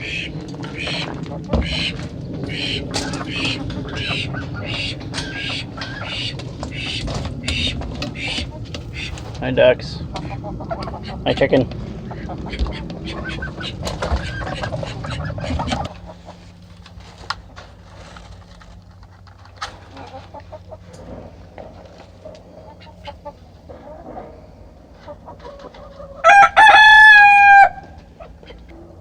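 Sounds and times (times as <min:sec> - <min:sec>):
chickens clucking: 0:00.0 - 0:29.0
flurry of bird noise: 0:00.0 - 0:29.0
rooster crowing: 0:26.0 - 0:28.3.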